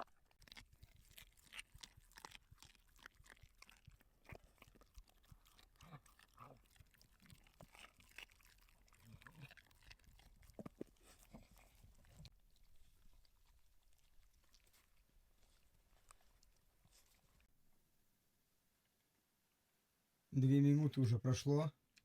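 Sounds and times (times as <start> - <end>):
dogs chewing and crunching food: 0.0 - 17.5.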